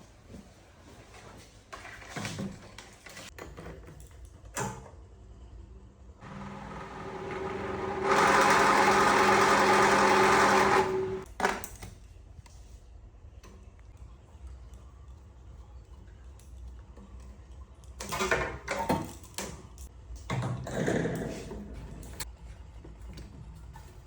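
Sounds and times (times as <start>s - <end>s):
table fan motor whirring: 6.2s - 11.2s.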